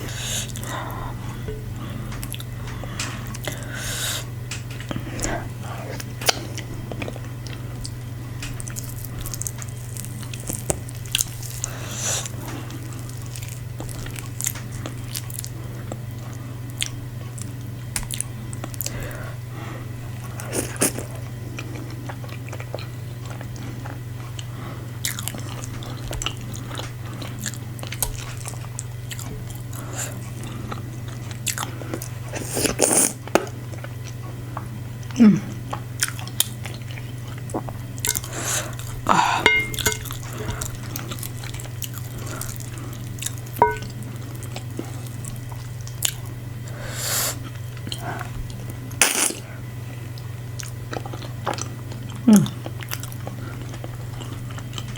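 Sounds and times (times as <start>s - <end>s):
person chewing food: 0.0s - 19.3s, 20.1s - 54.9s
steady low hum: 0.0s - 54.9s.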